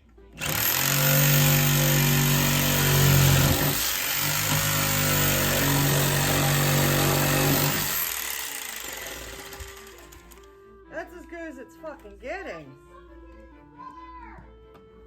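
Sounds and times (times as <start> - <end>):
electric jigsaw sawing: 0.4 - 10.5.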